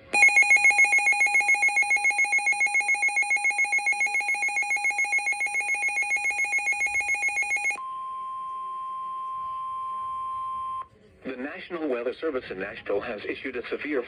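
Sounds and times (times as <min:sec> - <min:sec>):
rapidly trilling alarm beep: 0:00.0 - 0:07.8.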